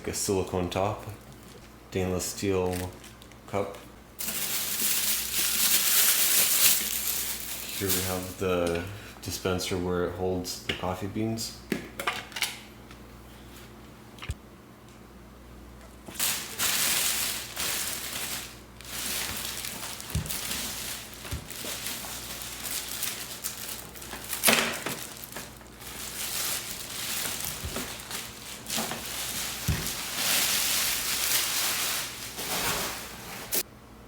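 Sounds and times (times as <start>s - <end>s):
plastic packaging crinkling: 2.4s - 3.5s, 4.2s - 8.4s, 16.1s - 33.6s.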